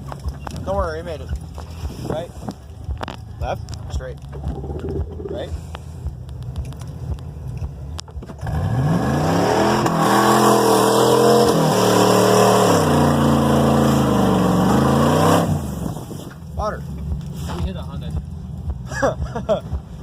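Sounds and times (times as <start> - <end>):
truck engine revving: 4.3 - 5.7, 8.2 - 16.2.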